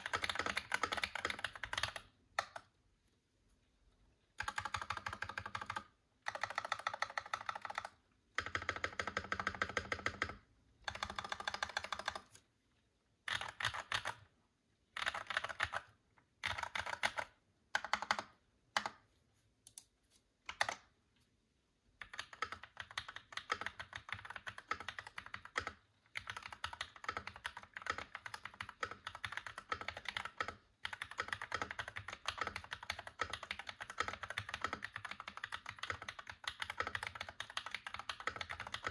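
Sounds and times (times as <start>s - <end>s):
fast typing on mechanical keyboard: 0.0s - 2.6s, 4.4s - 12.4s, 13.3s - 14.2s, 15.0s - 19.0s, 20.5s - 20.9s, 22.0s - 38.9s.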